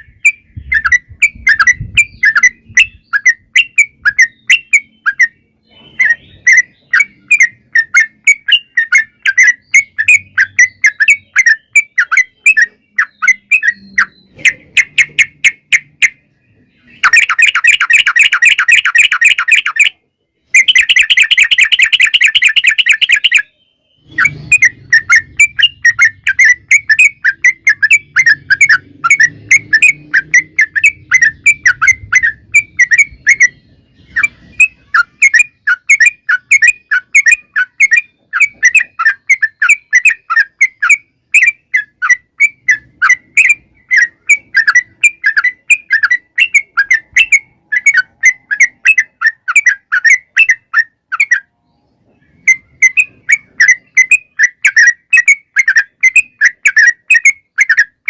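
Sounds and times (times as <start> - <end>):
bird sharp repeated chirps: 0.0 - 58.0.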